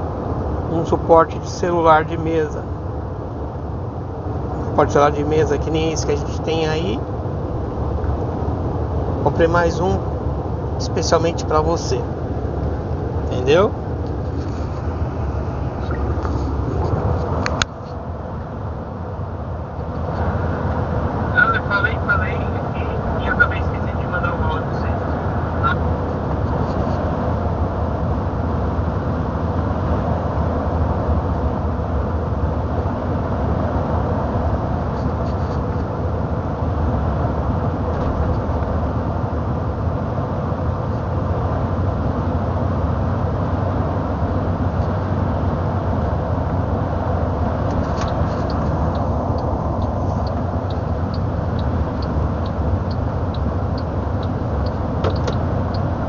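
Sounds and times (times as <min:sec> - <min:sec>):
truck engine and road noise: 0:00.0 - 0:56.0
light ticking: 0:48.0 - 0:55.9.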